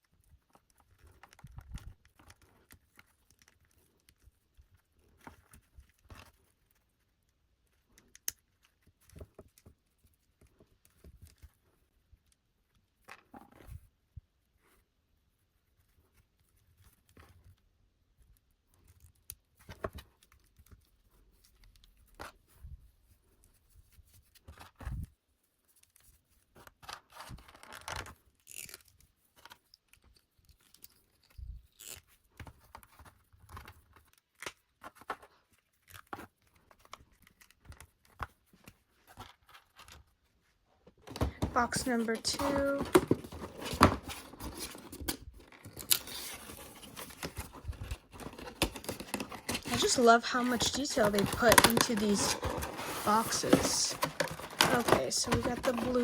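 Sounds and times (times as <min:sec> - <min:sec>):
packaging rustling and tearing: 0:41.0 - 0:56.0.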